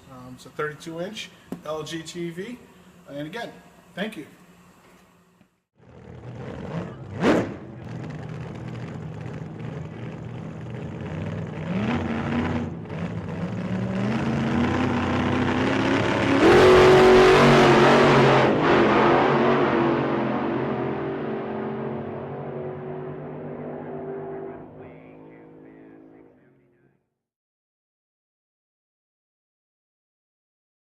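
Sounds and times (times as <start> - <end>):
car engine revving: 5.8 - 26.6.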